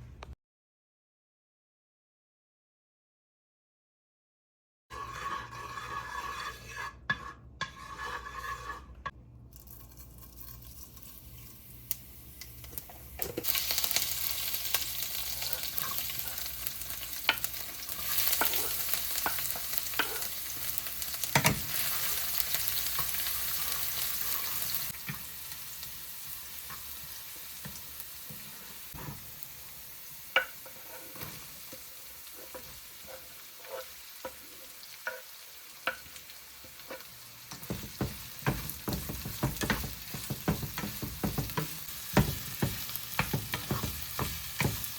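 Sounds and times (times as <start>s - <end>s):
utensil scraping and knocking pan: 4.9s - 9.2s, 17.3s - 20.3s, 36.7s - 44.9s
food sizzling in a pan: 10.2s - 44.9s.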